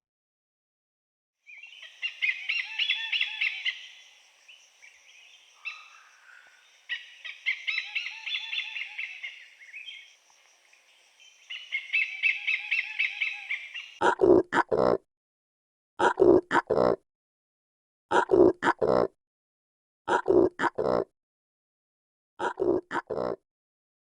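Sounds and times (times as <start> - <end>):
small birds chirping: 1.4 - 14.0.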